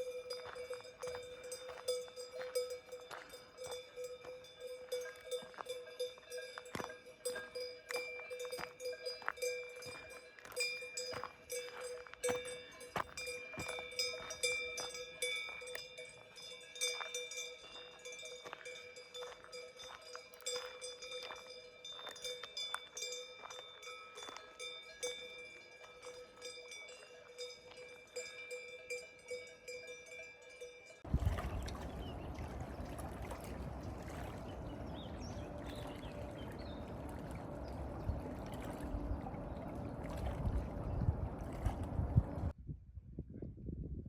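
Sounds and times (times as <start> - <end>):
cowbells clanking: 0.0 - 31.1
rushing noise with deep rumble: 31.1 - 42.6.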